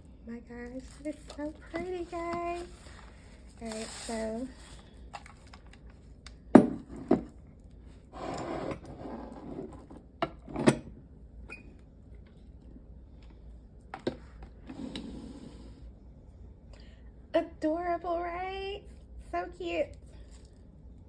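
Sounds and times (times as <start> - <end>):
handling rustle: 0.6 - 5.8.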